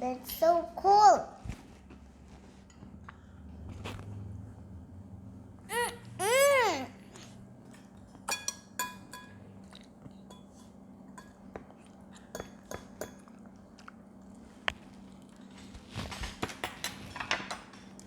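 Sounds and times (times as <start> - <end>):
utensils clinking on dishes: 7.8 - 9.4, 10.2 - 11.4
quiet chewing: 9.6 - 15.9.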